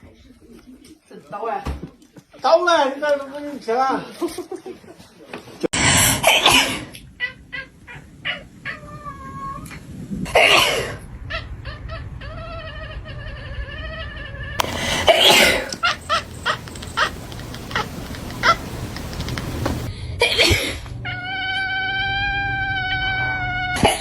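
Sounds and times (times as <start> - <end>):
scattered clicks: 14.6 - 19.9
short noisy bursts: 14.6 - 19.9.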